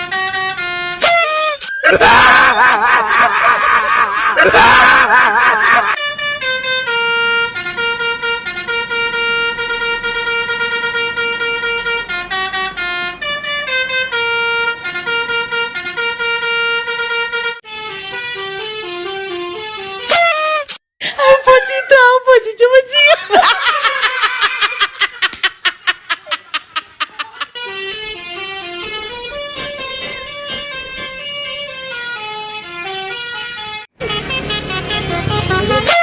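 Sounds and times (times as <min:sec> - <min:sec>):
wavering siren-like horn: 0:00.0 - 0:03.5, 0:27.6 - 0:36.0
musical bus horn playing a tune: 0:00.0 - 0:20.8, 0:27.4 - 0:36.0.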